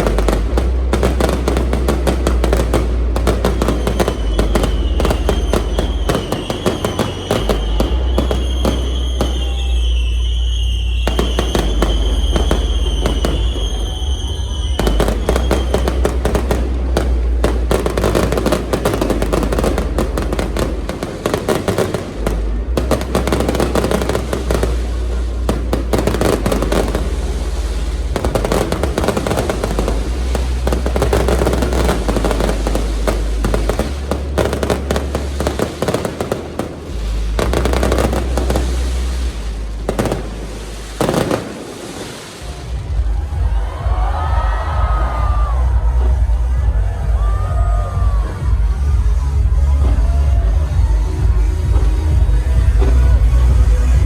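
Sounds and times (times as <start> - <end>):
fireworks bangs and crackling: 0.0 - 54.0
fireworks low booms: 0.0 - 54.0.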